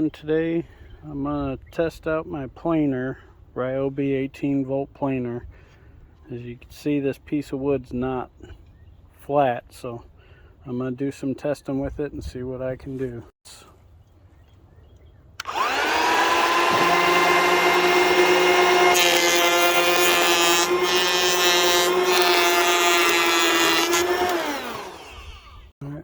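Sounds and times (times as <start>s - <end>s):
electric planer whining: 15.4s - 25.7s
planer shaving wood hiss: 15.4s - 25.7s.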